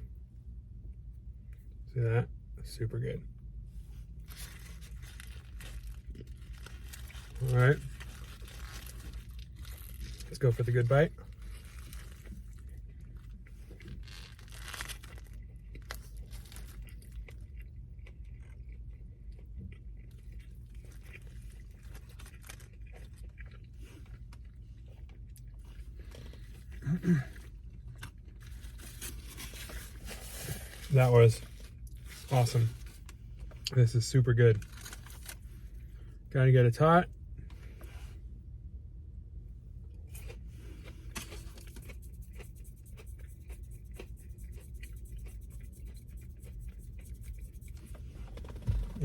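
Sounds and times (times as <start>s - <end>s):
person chewing: 4.3s - 10.3s, 11.2s - 30.9s, 39.9s - 49.0s.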